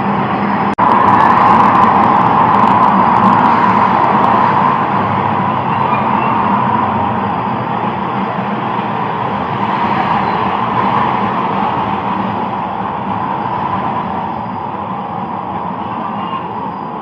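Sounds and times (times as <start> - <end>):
vehicle rumble: 0.0 - 17.0.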